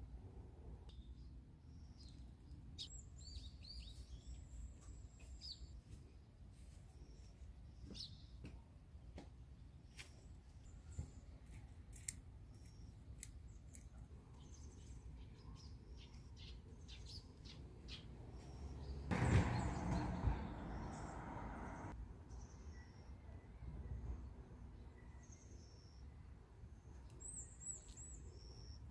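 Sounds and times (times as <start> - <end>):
birds chirping: 12.5 - 23.1.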